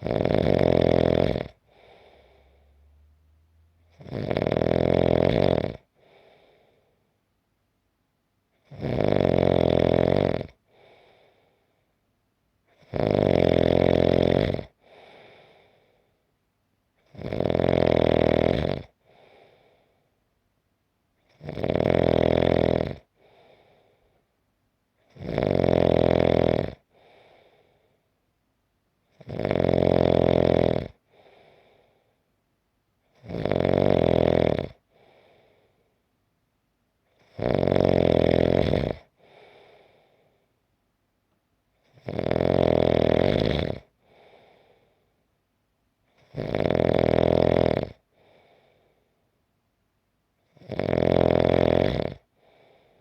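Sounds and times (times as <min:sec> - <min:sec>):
person snoring: 0:00.0 - 0:06.8, 0:08.6 - 0:11.4, 0:12.7 - 0:15.9, 0:17.0 - 0:19.8, 0:21.3 - 0:23.8, 0:25.1 - 0:27.7, 0:29.1 - 0:31.9, 0:33.1 - 0:35.6, 0:37.2 - 0:40.2, 0:41.8 - 0:44.7, 0:46.2 - 0:48.8, 0:50.4 - 0:53.0
faint breath out: 0:01.6 - 0:03.8, 0:05.9 - 0:07.2, 0:10.6 - 0:12.0, 0:14.8 - 0:16.3, 0:19.0 - 0:20.2, 0:23.2 - 0:24.3, 0:26.9 - 0:28.1, 0:31.0 - 0:32.2, 0:34.8 - 0:36.0, 0:39.1 - 0:40.6, 0:44.0 - 0:45.2, 0:48.1 - 0:49.2, 0:52.3 - 0:53.0.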